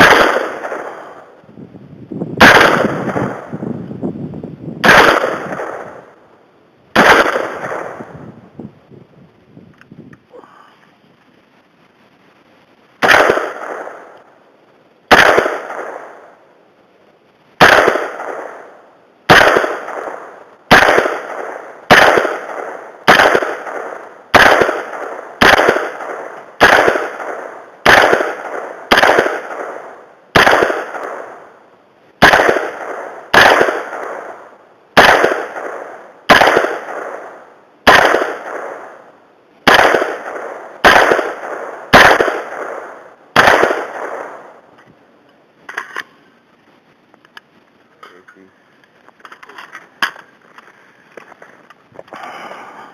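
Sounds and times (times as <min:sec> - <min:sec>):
rifle shots with echo: 0:00.0 - 0:01.4, 0:02.4 - 0:03.6, 0:04.8 - 0:06.2, 0:06.9 - 0:08.3, 0:13.0 - 0:14.2, 0:15.1 - 0:16.4, 0:17.6 - 0:31.6, 0:32.2 - 0:44.7.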